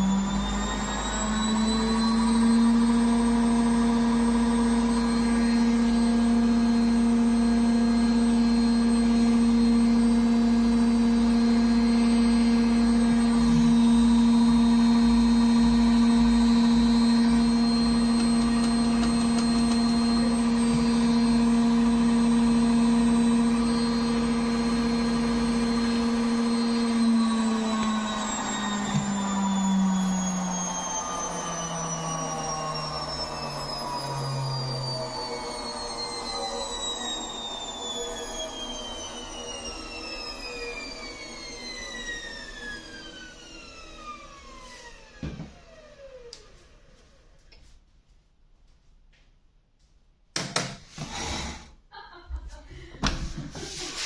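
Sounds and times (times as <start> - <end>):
washing machine spinning: 0.0 - 46.2.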